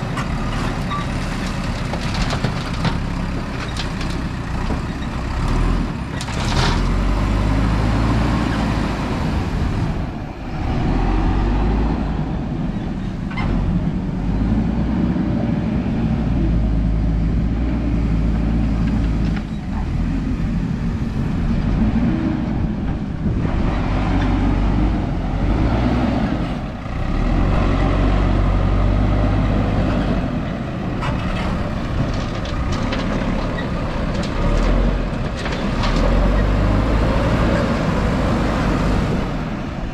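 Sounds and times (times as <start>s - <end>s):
gravel clattering: 0.0s - 7.0s, 29.8s - 38.6s
diesel backhoe engine under load: 0.0s - 39.9s.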